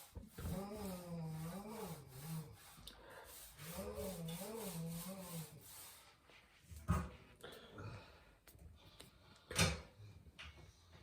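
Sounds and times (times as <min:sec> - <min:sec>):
faint rubbing noise: 0:00.0 - 0:07.2.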